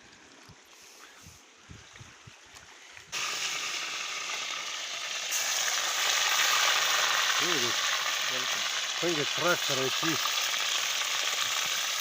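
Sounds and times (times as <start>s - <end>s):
fish sizzling in hot oil: 3.1s - 12.0s.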